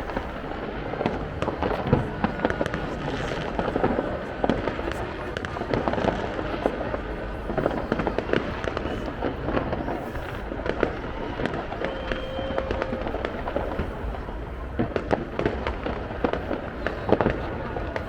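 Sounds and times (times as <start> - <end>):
fireworks bangs and crackling pops: 0.0 - 18.0
whistle-like tone: 11.8 - 12.8.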